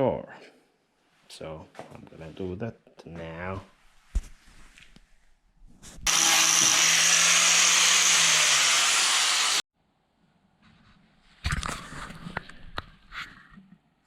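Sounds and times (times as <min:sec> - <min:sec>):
power tool grinding metal: 0:06.1 - 0:09.6.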